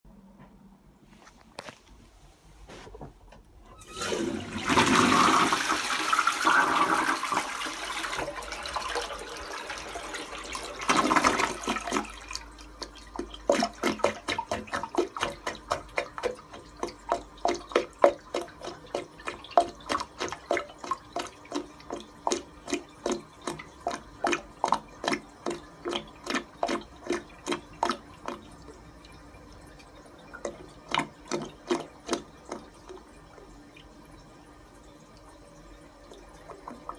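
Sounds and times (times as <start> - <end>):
toilet flushing: 3.6 - 36.9
toilet bowl gurgling: 3.7 - 36.9.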